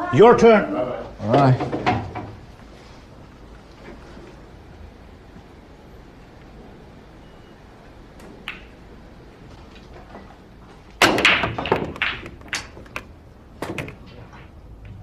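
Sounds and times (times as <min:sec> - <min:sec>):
billiard balls clacking: 0:08.1 - 0:15.0.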